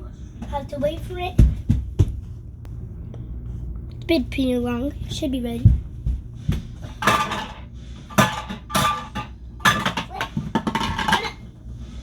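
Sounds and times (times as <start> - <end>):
kitchenware clattering and clinking: 6.8 - 11.6.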